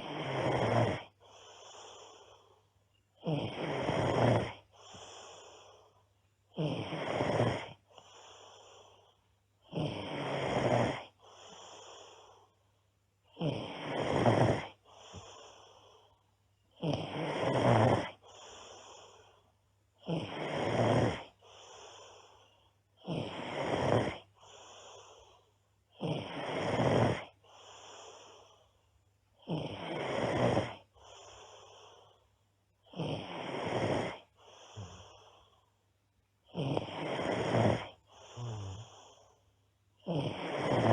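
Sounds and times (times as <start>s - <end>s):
girl snoring loudly: 0.0s - 2.4s, 3.2s - 5.6s, 6.5s - 9.0s, 9.6s - 12.5s, 13.3s - 15.6s, 16.7s - 19.2s, 20.0s - 22.2s, 23.0s - 25.2s, 25.9s - 28.3s, 29.4s - 31.8s, 32.8s - 35.4s, 36.5s - 39.3s, 40.0s - 40.9s
breathy exhale: 14.8s - 16.3s, 34.1s - 35.7s, 38.0s - 39.4s.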